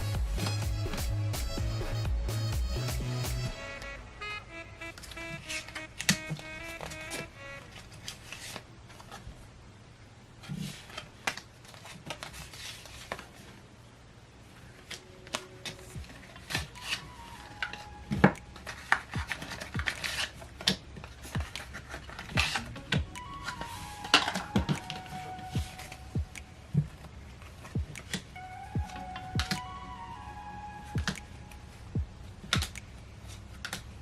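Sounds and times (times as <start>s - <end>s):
faint background music: 0.0s - 8.6s, 14.4s - 34.0s
packaging crinkling and rustling: 10.4s - 13.7s, 14.7s - 25.9s.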